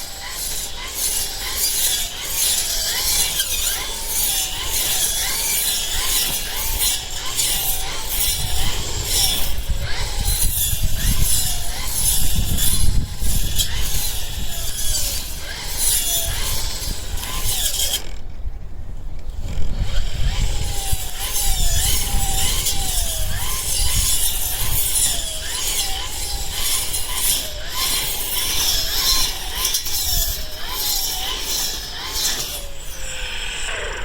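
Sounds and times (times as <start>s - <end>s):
brush cutter engine running: 0.0s - 34.0s.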